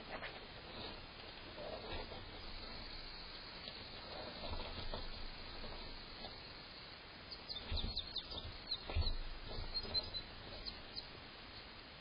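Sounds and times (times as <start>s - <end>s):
faint bird chirps: 7.2s - 11.7s
soft low thumps: 7.5s - 11.2s.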